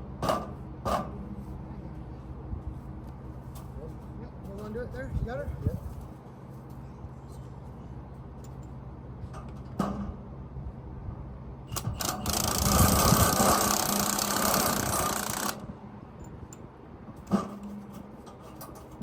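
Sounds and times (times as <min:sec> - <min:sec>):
low engine hum: 0:00.0 - 0:18.3
power tool running: 0:11.8 - 0:15.6.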